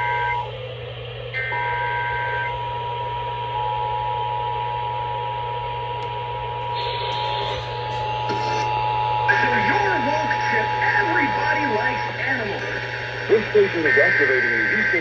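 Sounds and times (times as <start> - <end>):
radio hiss and hum: 6.4 - 15.0.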